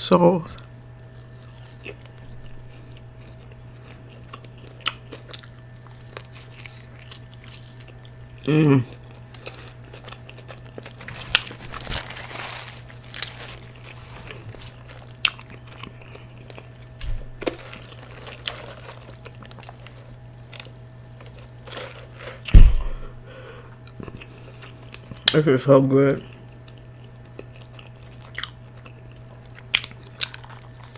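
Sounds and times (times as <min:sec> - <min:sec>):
person chewing food: 0:00.6 - 0:25.4, 0:26.3 - 0:30.9
short low thud: 0:17.0 - 0:17.5, 0:22.5 - 0:23.2.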